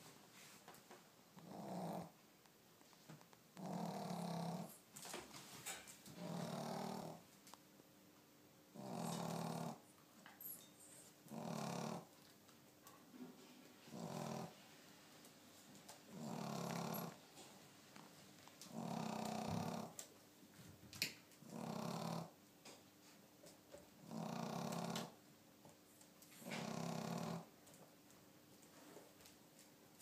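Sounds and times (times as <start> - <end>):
pet snoring: 1.3 - 2.2, 3.6 - 4.8, 6.1 - 7.2, 8.7 - 9.8, 11.2 - 12.1, 13.8 - 14.6, 16.1 - 17.2, 18.6 - 20.0, 21.4 - 22.4, 24.0 - 25.2, 26.4 - 27.5.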